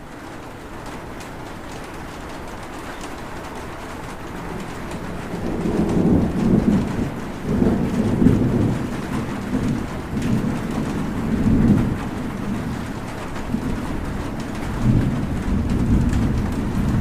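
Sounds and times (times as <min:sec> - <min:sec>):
steady rainfall: 0:00.0 - 0:17.0
rolling thunder: 0:04.0 - 0:17.0.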